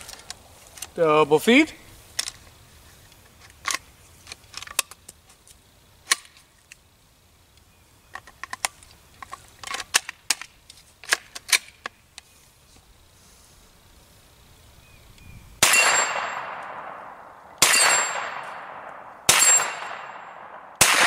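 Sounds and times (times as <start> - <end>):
metallic clicks of gun action: 3.4 - 5.2, 6.0 - 6.8, 8.1 - 12.0.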